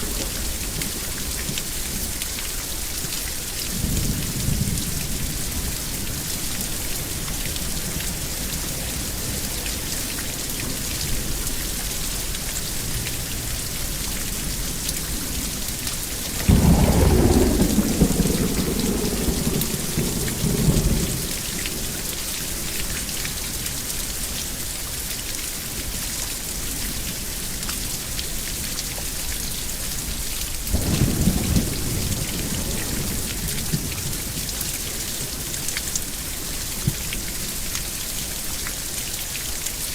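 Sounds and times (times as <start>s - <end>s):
steady rain falling: 0.0s - 39.9s
thunder rumbling: 16.2s - 22.2s, 30.7s - 34.6s.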